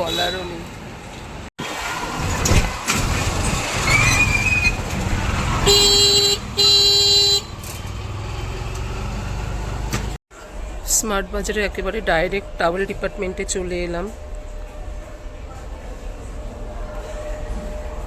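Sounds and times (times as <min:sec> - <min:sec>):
street traffic engines: 0:00.0 - 0:18.0
vehicle horn honking: 0:05.6 - 0:07.6.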